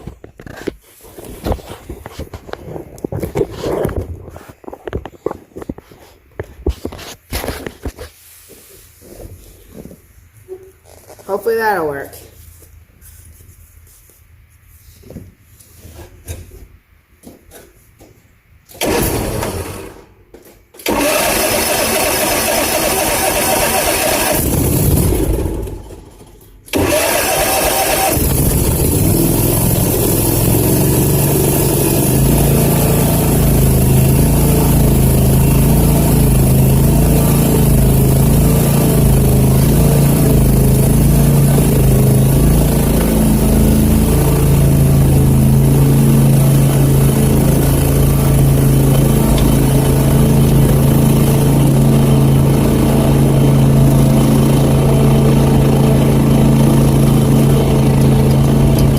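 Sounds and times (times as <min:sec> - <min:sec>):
riding mower engine running: 0:18.7 - 0:20.1, 0:20.8 - 0:58.9.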